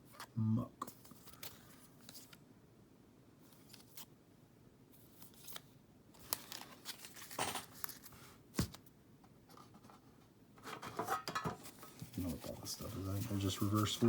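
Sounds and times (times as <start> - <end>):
trading cards rustling: 5.0 - 8.2, 11.6 - 14.0.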